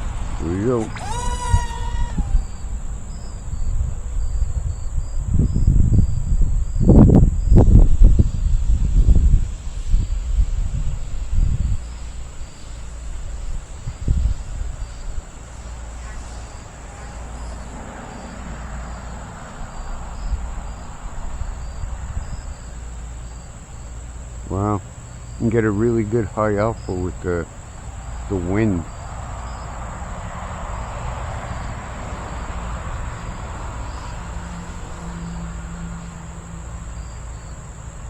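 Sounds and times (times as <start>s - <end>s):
wind buffeting microphone: 0.0s - 24.5s
thin steady high buzz: 0.0s - 29.1s
crickets chirping: 0.0s - 38.0s
electric model plane motor whine: 0.4s - 3.7s.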